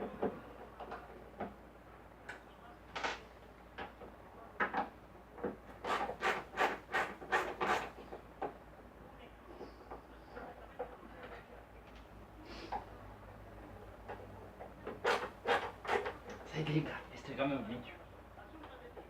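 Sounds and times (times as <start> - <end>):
screwdriver scraping wood: 5.8 - 8.1, 14.9 - 16.2.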